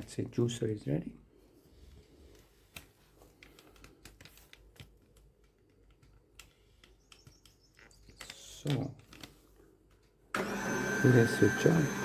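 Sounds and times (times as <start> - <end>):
plastic parts clicking and tapping: 2.3 - 10.2.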